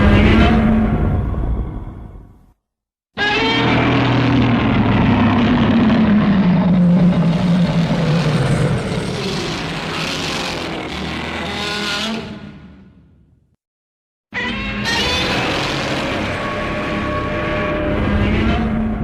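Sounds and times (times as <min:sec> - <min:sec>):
harsh creature roar: 0:03.2 - 0:12.8, 0:14.9 - 0:17.8.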